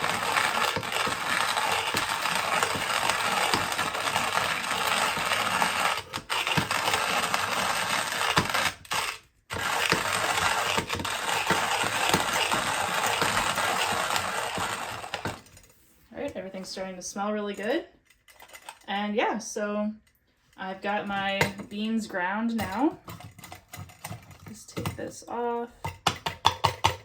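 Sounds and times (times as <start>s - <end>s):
hand coffee grinder crunching beans: 0.0s - 15.6s.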